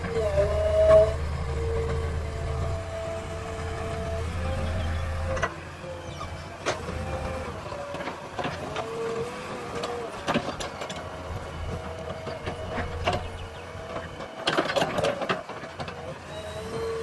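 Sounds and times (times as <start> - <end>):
diesel engine whining: 0.0 - 17.0.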